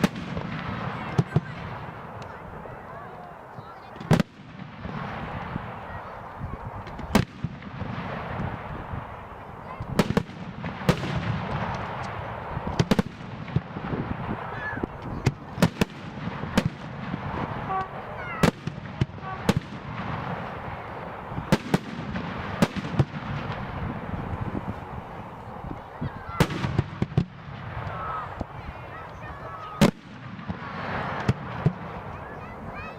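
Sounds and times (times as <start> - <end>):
rumble and crackle of bursts: 6.7 - 32.1.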